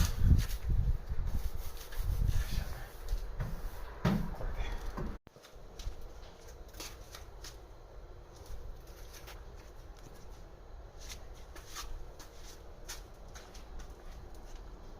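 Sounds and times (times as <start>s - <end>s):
aluminium sheet crinkling: 8.3s - 10.4s.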